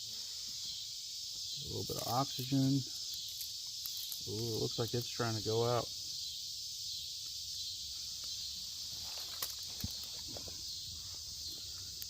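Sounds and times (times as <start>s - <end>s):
high-pitched insect chorus: 0.0s - 12.0s
handling clicks and rustles: 1.9s - 5.2s, 8.9s - 10.6s.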